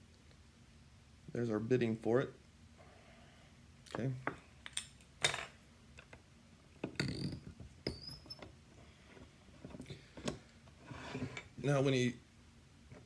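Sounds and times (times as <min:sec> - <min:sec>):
high metallic squeak: 0:07.9 - 0:08.4
metallic clattering scrape: 0:10.8 - 0:11.5.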